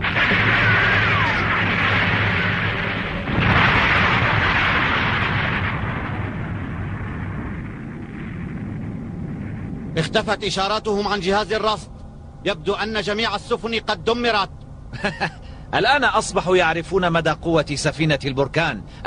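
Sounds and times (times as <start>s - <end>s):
cartoon explosions: 0.0s - 10.0s.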